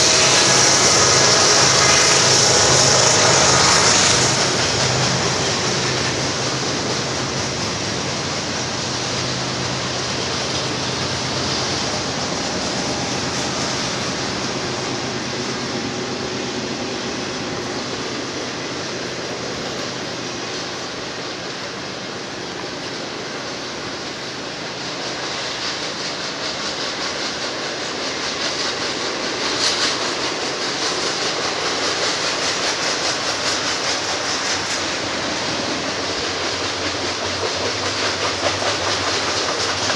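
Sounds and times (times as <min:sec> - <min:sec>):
train wheels rumbling on rails: 0:00.0 - 0:39.9
rhythmic clacking: 0:24.6 - 0:39.9.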